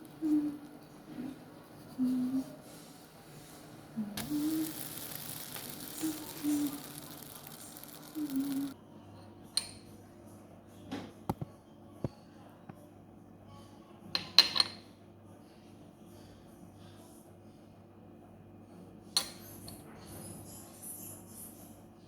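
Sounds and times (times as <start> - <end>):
steady hiss: 3.3 - 8.8.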